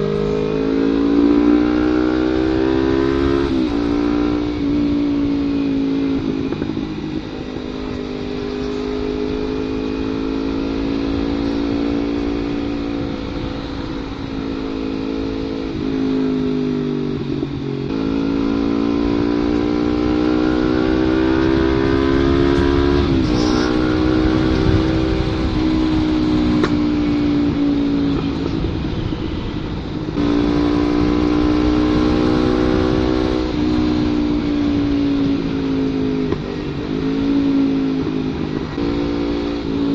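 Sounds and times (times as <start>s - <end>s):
motorcycle exhaust note: 0.0s - 39.9s
steady rushing noise: 0.0s - 39.9s.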